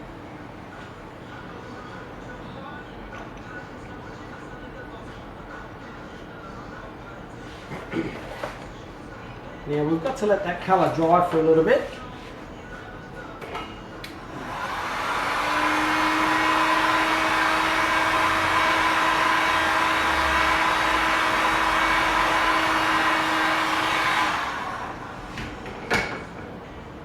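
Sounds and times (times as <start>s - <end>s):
electric blower running: 14.2s - 25.5s.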